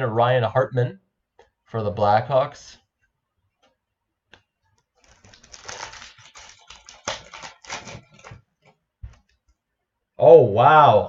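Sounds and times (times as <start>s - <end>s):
trading cards rustling and clicking: 4.8s - 9.4s.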